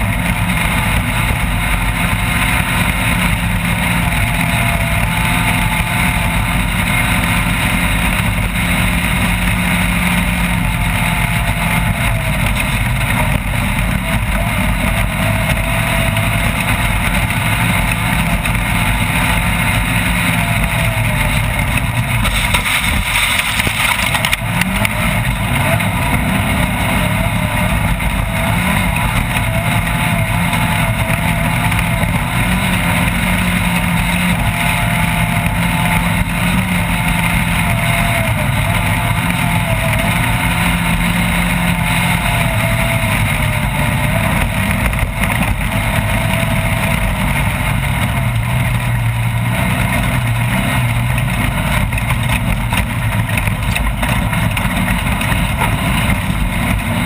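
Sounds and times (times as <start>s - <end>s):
race vehicle engine running hard: 0.0s - 57.0s
rush of noise: 0.0s - 57.0s.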